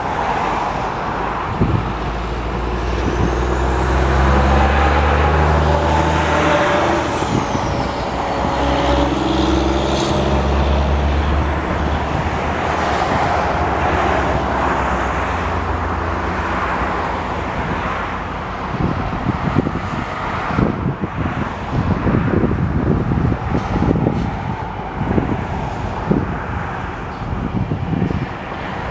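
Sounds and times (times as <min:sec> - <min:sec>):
locomotive diesel engine hum: 0:00.0 - 0:28.9
high squeal falling in pitch: 0:03.8 - 0:11.2.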